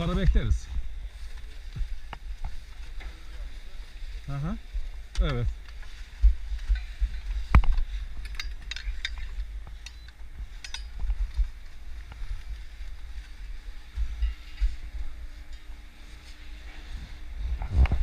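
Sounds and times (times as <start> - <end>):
wind buffeting microphone: 17.1 - 18.0.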